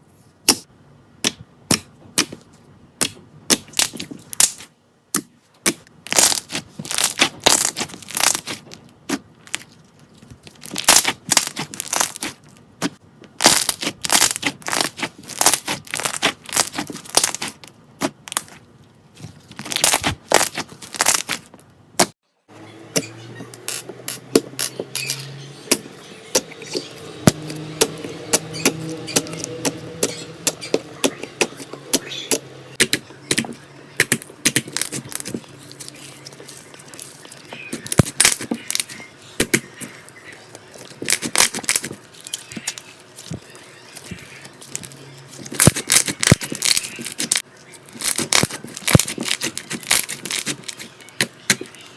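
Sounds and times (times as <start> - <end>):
slime crackling and popping: 5.6 - 9.7, 10.4 - 18.6, 19.6 - 22.1, 34.0 - 39.6, 41.0 - 42.8, 44.7 - 51.7
quiet background music: 22.3 - 51.9.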